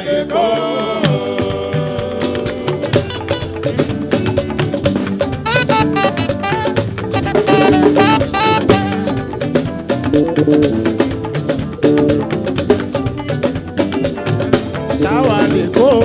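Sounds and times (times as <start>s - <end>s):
drums and hand percussion: 0.0s - 16.0s
stepping melody: 5.4s - 9.3s.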